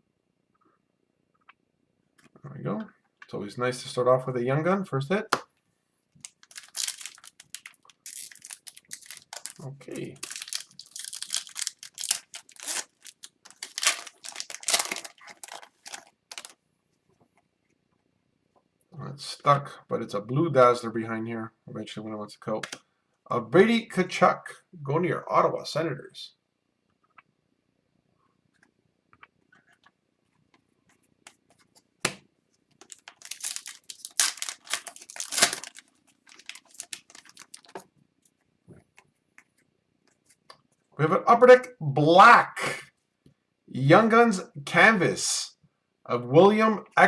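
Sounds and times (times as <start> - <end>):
card wrapper crinkling and tearing: 6.2 - 16.6, 32.8 - 37.8.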